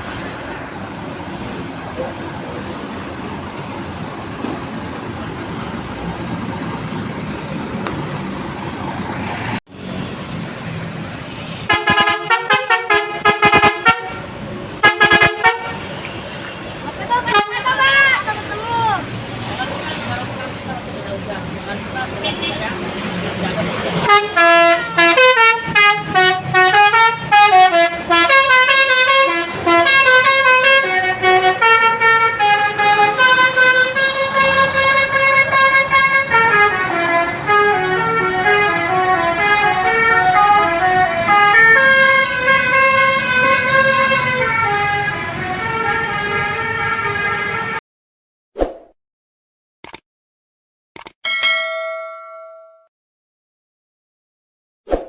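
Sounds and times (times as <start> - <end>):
musical bus horn melody: 11.6 - 16.0, 17.2 - 17.8, 24.0 - 47.8.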